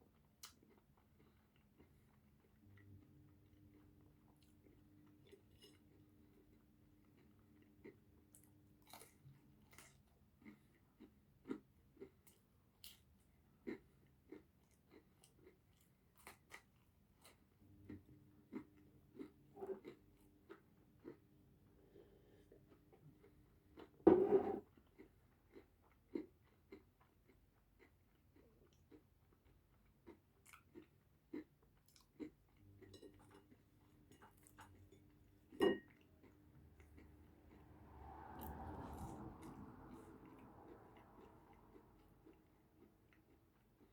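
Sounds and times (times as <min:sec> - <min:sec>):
person chewing food: 0:00.0 - 0:37.8, 0:38.4 - 0:43.9
chewing with wet mouth clicks: 0:24.8 - 0:35.0.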